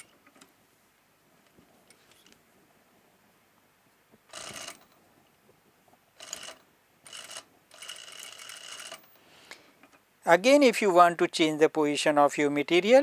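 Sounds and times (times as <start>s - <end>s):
sewing machine running: 6.2s - 9.1s.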